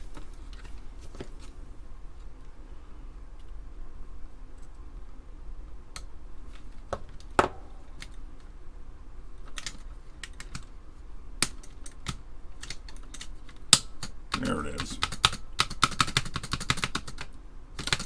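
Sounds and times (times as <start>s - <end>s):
plastic keyboard keys clicking: 9.5s - 10.7s, 15.0s - 18.0s.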